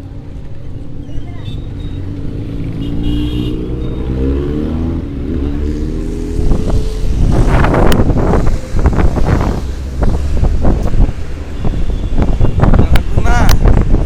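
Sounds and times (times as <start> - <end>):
bus engine revving: 2.0 - 12.3
wind buffeting microphone: 6.0 - 14.0.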